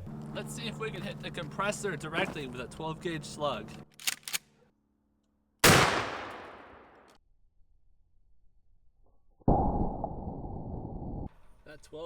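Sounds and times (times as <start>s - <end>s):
shotgun blast: 5.6s - 7.1s.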